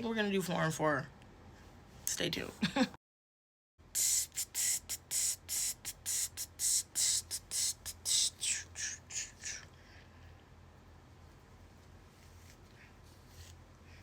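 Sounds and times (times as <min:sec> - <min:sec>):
spray bottle hissing sprays: 0:04.0 - 0:08.6.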